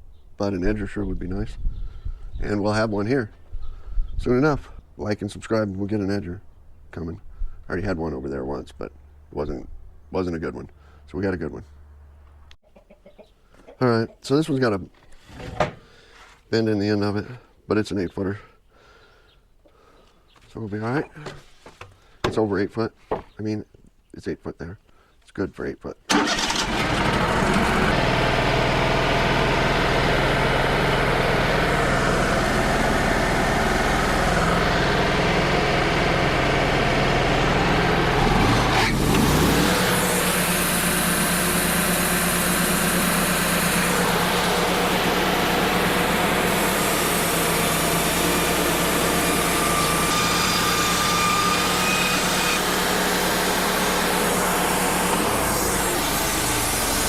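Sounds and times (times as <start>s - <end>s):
sawmill engine humming: 26.1s - 57.0s.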